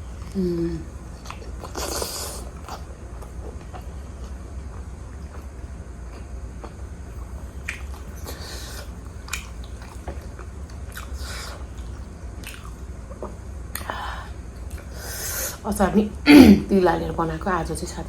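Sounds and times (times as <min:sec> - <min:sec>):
biting and chewing dumplings: 0:01.1 - 0:13.9.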